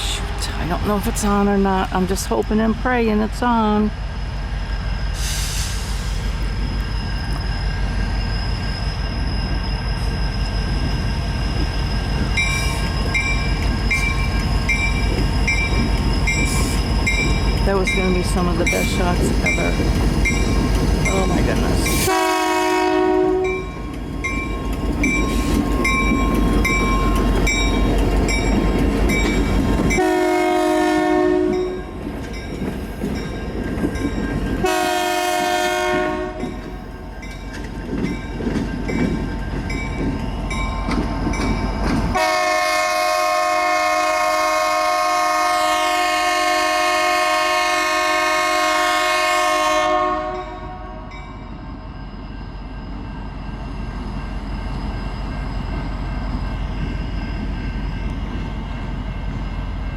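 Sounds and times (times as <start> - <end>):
locomotive engines rumbling: 0.0 - 59.9
locomotive multi-tone horn: 22.0 - 23.7, 29.9 - 31.9, 34.6 - 36.6, 42.2 - 51.1.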